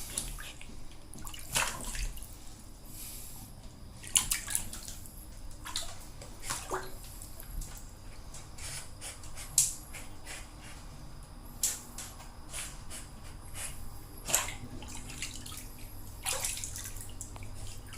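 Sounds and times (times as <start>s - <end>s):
water splashing in bathtub: 0.0s - 2.4s, 4.0s - 8.0s, 14.2s - 17.9s
steady low hum: 0.0s - 17.9s.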